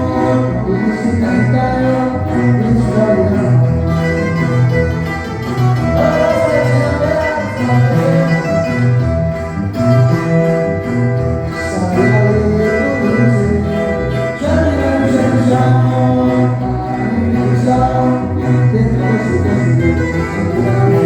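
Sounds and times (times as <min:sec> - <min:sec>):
person singing melody: 0:00.0 - 0:21.0
tuba playing bass notes: 0:00.0 - 0:21.0.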